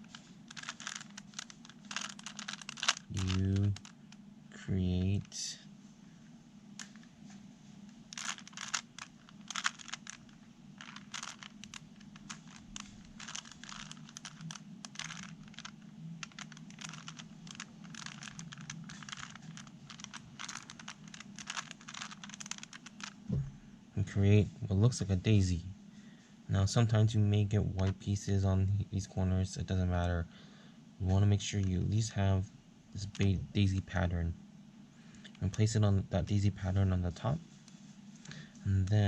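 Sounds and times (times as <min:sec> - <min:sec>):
puzzle cube clicking and rattling: 0:00.0 - 0:04.2, 0:06.8 - 0:07.1, 0:08.0 - 0:23.3.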